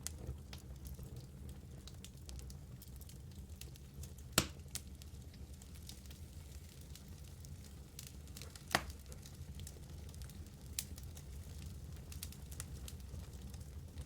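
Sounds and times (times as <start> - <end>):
fire crackling: 0.0 - 14.0
fire flames rumbling: 0.0 - 14.0
loud pop from fire: 4.3 - 4.8.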